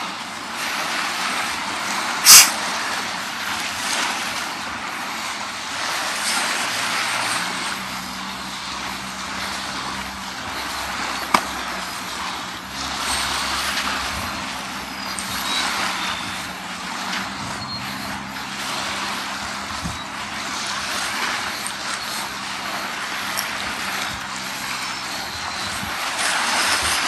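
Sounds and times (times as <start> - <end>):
low engine hum: 0.0 - 27.0
small waves washing onto beach: 0.0 - 27.0
sharp click: 2.3 - 2.6.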